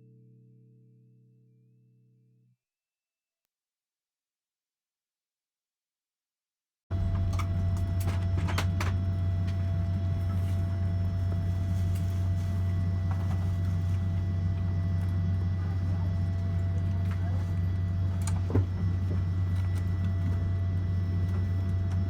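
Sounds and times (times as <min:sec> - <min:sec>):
cabin ventilation hum: 0:06.9 - 0:22.0.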